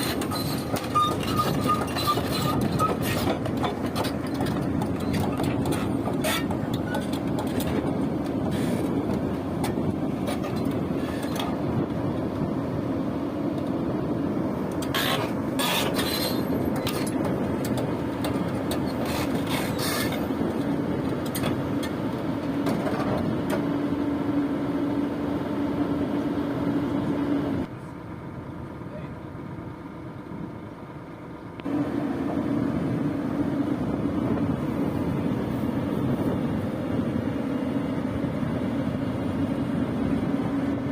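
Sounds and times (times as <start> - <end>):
metallic knocks and clanks: 0.0 - 11.6
diesel engine running: 0.0 - 40.9.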